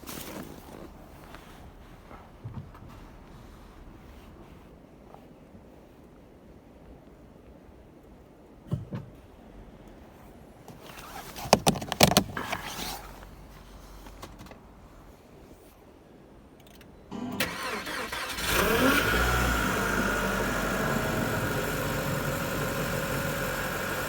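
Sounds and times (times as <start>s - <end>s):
car engine idling with whine: 18.4s - 24.0s.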